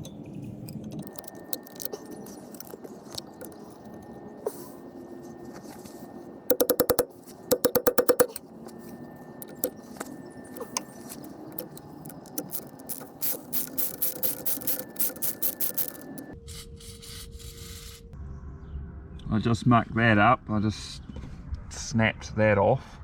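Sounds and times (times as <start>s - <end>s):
tools clicking on metal fittings: 0.0s - 4.1s, 6.5s - 8.5s, 9.4s - 9.8s, 10.5s - 16.4s
metal taps: 6.5s - 8.4s, 9.4s - 9.8s.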